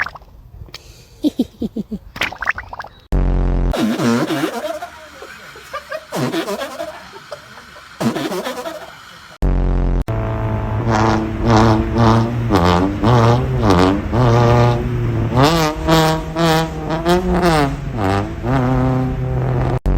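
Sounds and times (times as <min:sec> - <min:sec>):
loud low droning tone: 0:09.4 - 0:15.4.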